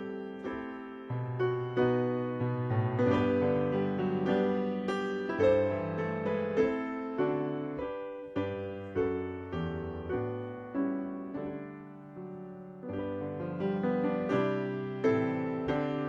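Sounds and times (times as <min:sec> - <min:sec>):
solo piano slow chords: 0:00.0 - 0:16.0.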